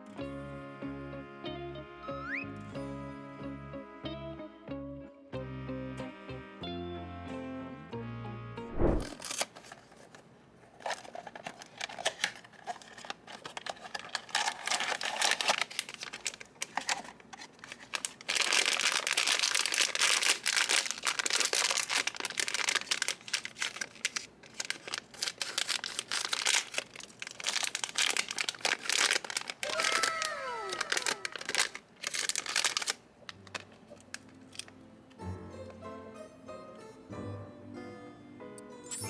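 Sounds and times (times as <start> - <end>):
packaging crinkling and tearing: 9.0 - 10.1, 10.7 - 34.7.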